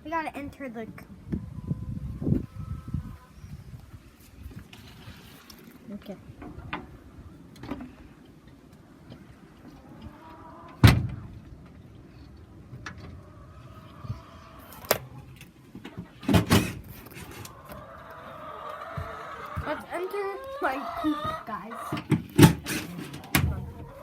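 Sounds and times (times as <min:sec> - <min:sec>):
coop door knocks and bangs: 0:10.8 - 0:11.3, 0:21.9 - 0:23.6.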